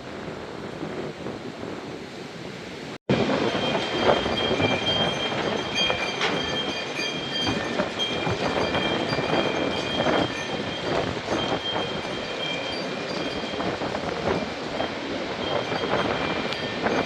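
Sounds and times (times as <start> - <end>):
wind: 0.0 - 17.0
heavy rain: 2.8 - 17.0
high whistling tones: 3.6 - 17.0.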